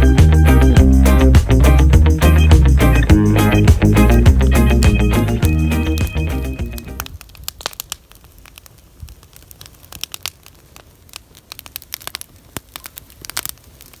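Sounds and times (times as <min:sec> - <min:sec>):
crackling clicks: 0:04.7 - 0:14.0.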